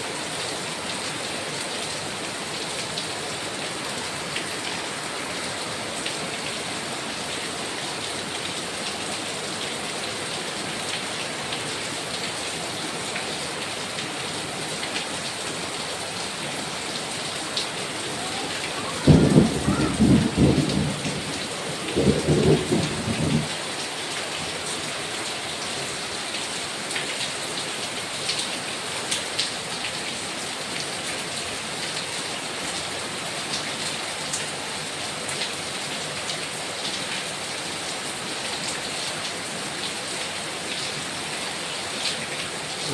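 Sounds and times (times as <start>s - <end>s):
heavy rain falling: 0.0s - 42.9s
thunder clap and rumble: 18.9s - 23.5s.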